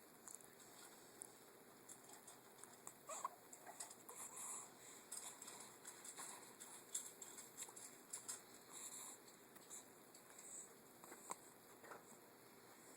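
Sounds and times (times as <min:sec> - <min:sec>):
baby squeaking: 0:03.1 - 0:03.4.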